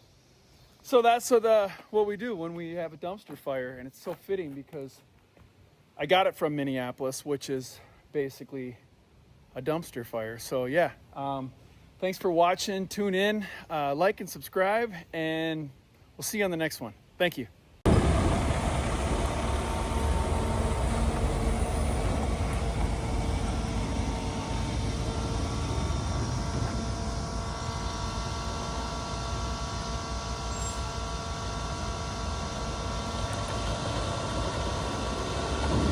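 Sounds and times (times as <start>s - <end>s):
faint steady tones: 17.9s - 35.9s
vehicle engine rumbling: 17.9s - 35.9s.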